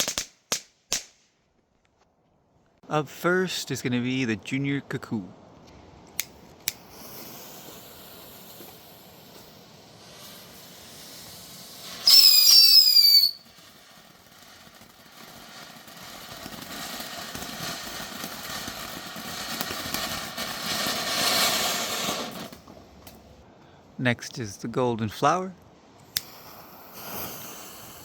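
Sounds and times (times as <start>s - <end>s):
firework spraying hiss: 6.2s - 22.7s, 26.0s - 28.0s
firework whistles: 6.7s - 22.7s, 26.2s - 28.0s.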